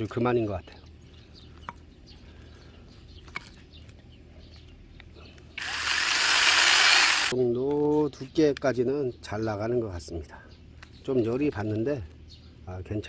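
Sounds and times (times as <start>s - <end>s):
mini chainsaw running: 5.6s - 7.3s.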